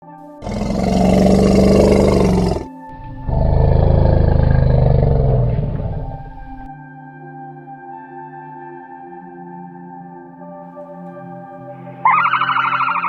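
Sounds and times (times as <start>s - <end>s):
faint ambient music: 0.0s - 13.0s
tiger roaring: 0.4s - 6.7s.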